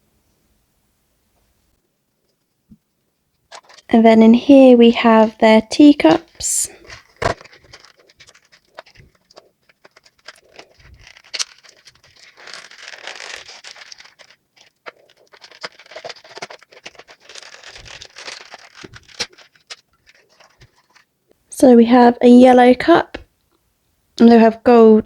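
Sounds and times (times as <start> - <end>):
packaging crinkling: 3.5 - 21.2.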